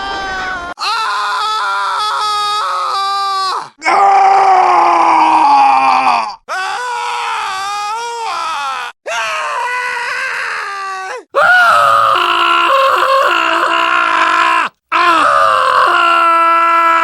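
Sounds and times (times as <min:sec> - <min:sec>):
person screaming: 0:08.7 - 0:17.0.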